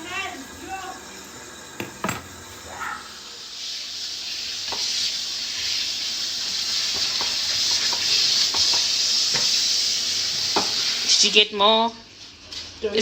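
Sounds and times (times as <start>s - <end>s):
chicken sizzling in hot oil: 0.0s - 11.6s
oil pops and crackles: 4.6s - 4.9s, 6.9s - 9.6s.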